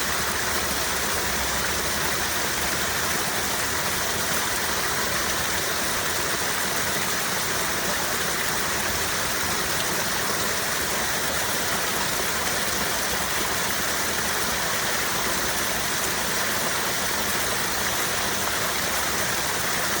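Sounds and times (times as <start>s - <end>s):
water rushing over rocks: 0.0s - 20.0s.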